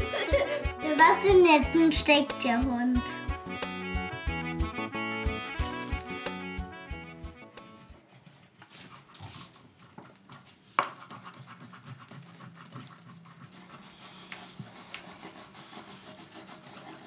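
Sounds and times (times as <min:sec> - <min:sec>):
scratching and rubbing: 0:07.2 - 0:17.0.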